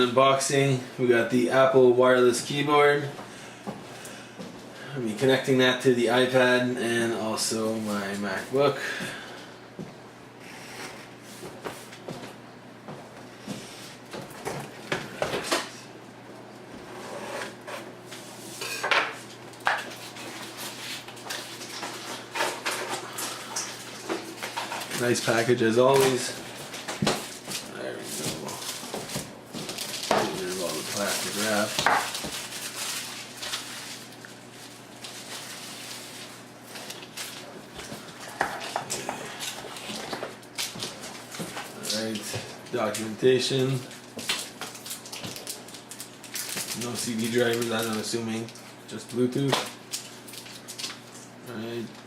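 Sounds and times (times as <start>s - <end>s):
plastic wrap crinkling: 19.9s - 51.4s
packaging rustling: 20.0s - 43.0s, 43.6s - 51.4s.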